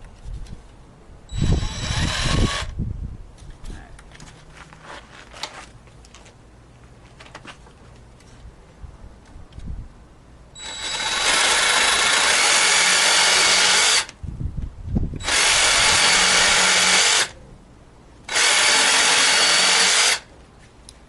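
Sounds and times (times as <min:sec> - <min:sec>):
jigsaw running: 0:10.6 - 0:14.1, 0:15.2 - 0:17.3, 0:18.3 - 0:20.3.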